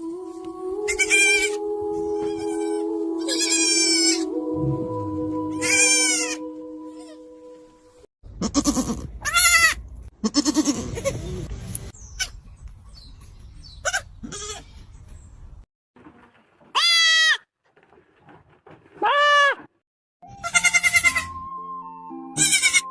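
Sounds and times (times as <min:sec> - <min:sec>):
baby goats bleating: 0:00.9 - 0:04.3, 0:05.6 - 0:07.2, 0:08.4 - 0:11.4, 0:13.8 - 0:14.7, 0:16.8 - 0:17.4, 0:20.3 - 0:21.4, 0:22.4 - 0:22.9
low rumble: 0:04.5 - 0:05.6.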